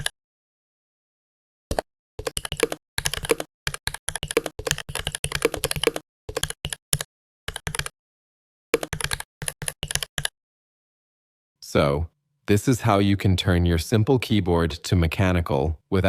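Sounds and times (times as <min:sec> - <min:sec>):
mechanical keyboard typing: 0:01.7 - 0:07.9, 0:08.8 - 0:10.3.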